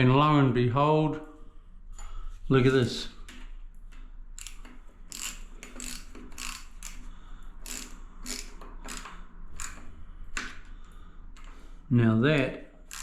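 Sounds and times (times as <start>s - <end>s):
ratcheting driver clicking: 4.4s - 11.6s.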